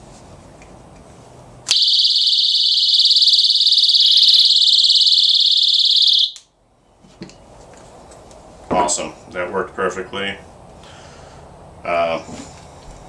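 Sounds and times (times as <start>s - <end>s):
shrill warbling personal alarm: 1.7s - 6.4s.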